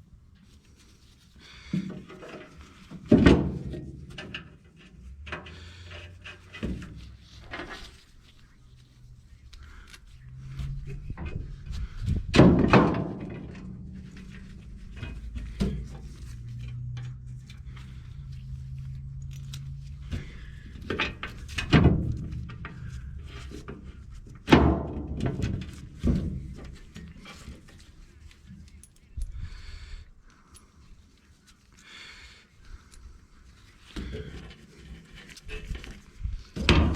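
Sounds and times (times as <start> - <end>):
heavy thunks and knocks: 12.2 - 13.8, 24.3 - 26.6.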